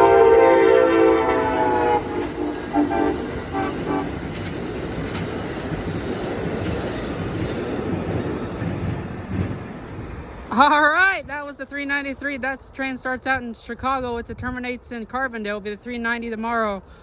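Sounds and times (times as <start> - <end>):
train horn: 0.0 - 4.3
train wheels on rails: 0.0 - 13.5.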